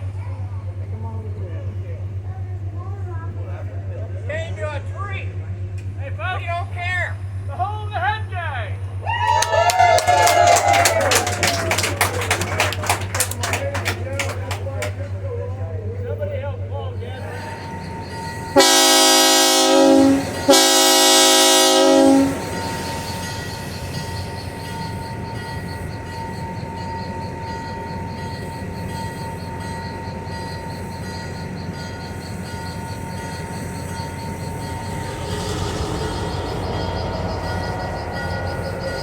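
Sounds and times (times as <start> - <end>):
train running rumble: 0.0 - 39.0
locomotive air horn blasts: 18.6 - 22.8.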